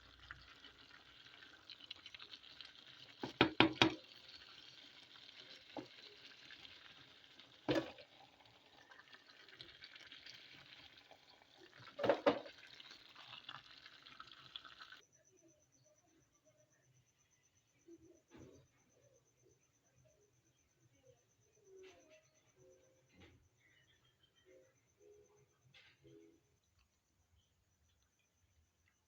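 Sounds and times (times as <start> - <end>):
food sizzling in a pot: 0.0 - 15.0
utensil knocking against pot: 3.2 - 4.0.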